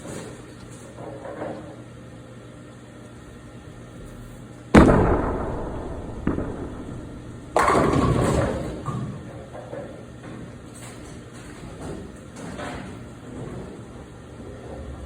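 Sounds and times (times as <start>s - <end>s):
bowling pins crashing: 4.8s - 9.4s.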